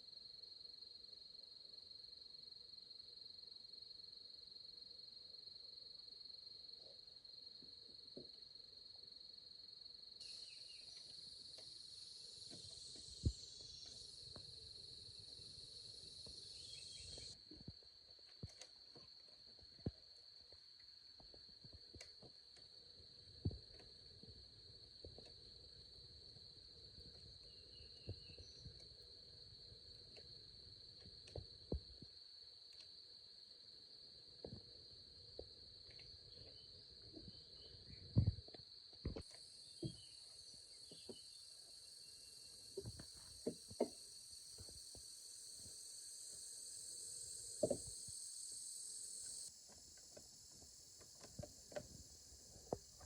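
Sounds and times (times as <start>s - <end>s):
wider insect buzz: 9.2s - 19.5s, 27.2s - 53.0s
high-pitched insect drone: 10.2s - 17.4s, 39.1s - 53.0s.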